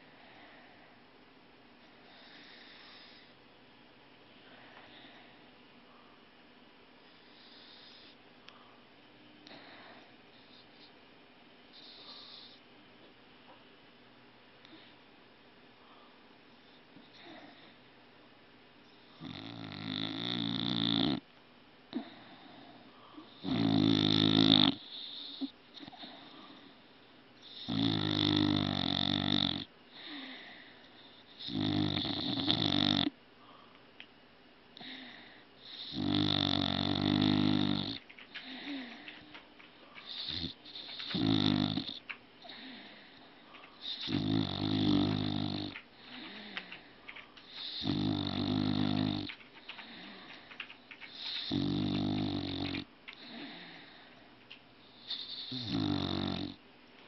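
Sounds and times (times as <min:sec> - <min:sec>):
pet snoring: 0:02.1 - 0:03.3, 0:07.1 - 0:08.2, 0:11.7 - 0:12.6, 0:19.0 - 0:21.2, 0:23.2 - 0:26.7, 0:27.4 - 0:30.4, 0:31.0 - 0:33.2, 0:34.8 - 0:39.4, 0:40.0 - 0:43.1, 0:43.7 - 0:54.0, 0:54.9 - 0:56.6
soft breath: 0:04.4 - 0:06.3, 0:07.0 - 0:11.0, 0:29.9 - 0:31.4, 0:38.0 - 0:41.2, 0:42.0 - 0:44.2, 0:45.8 - 0:47.9, 0:49.3 - 0:51.5, 0:53.1 - 0:55.5.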